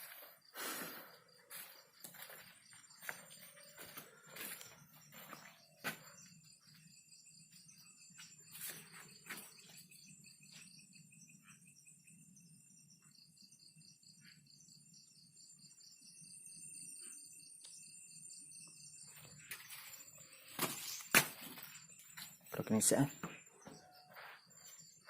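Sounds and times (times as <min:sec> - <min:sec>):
crickets trilling: 0:00.0 - 0:25.0
sharp knocks and rustles: 0:19.5 - 0:22.4.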